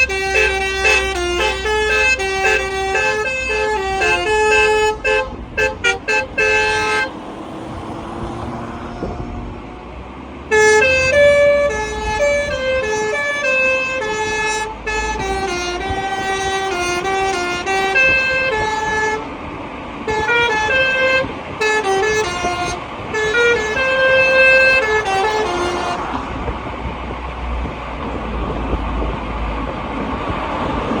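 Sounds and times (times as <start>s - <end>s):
multi-tone horn playing a tune: 0.0s - 7.2s, 10.5s - 19.4s, 20.1s - 26.2s
low rumble: 10.7s - 16.4s.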